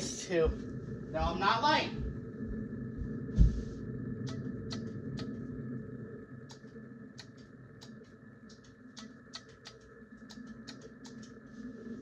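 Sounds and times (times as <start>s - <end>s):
faint steady hum: 0.0s - 12.0s
light sharp clicks: 6.5s - 11.4s.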